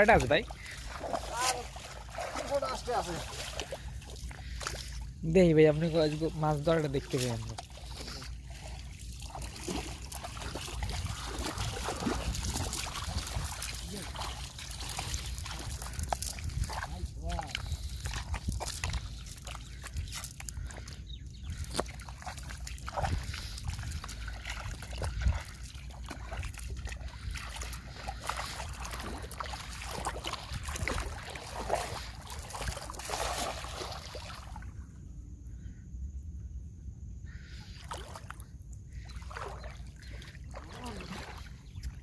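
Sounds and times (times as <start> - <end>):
river water splashing: 0.0 - 34.8, 37.7 - 42.0.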